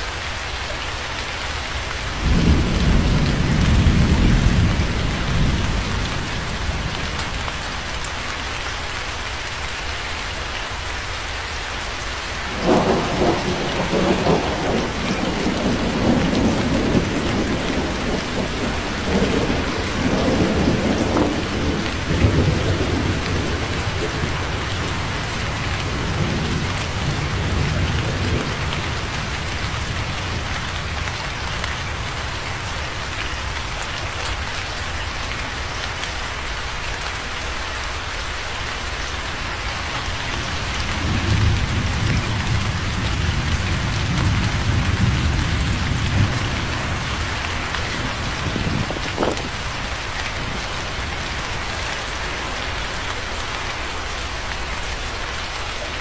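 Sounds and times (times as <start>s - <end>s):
heavy rain falling: 0.0s - 56.0s
thunder rumbling: 2.2s - 7.9s, 12.4s - 32.0s, 40.1s - 51.8s.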